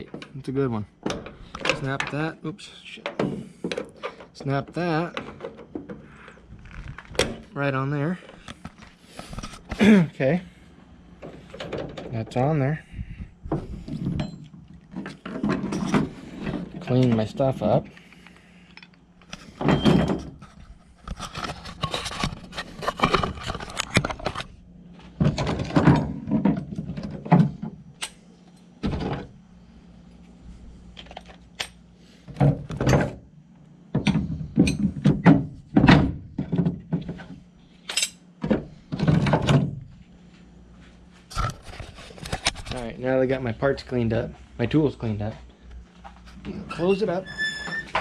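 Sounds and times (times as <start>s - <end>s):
tools knocking and clunking: 0.0s - 0.4s, 1.0s - 2.2s, 3.0s - 6.1s, 11.2s - 12.5s, 13.5s - 17.3s, 33.9s - 37.4s, 38.0s - 39.8s.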